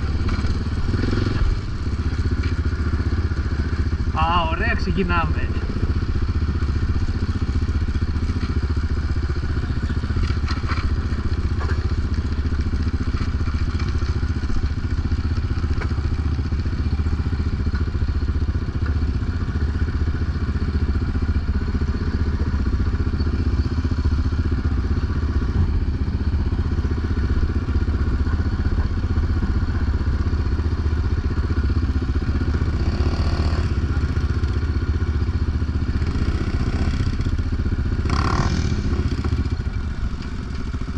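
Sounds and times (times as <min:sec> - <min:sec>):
quad engine running: 0:00.0 - 0:40.9.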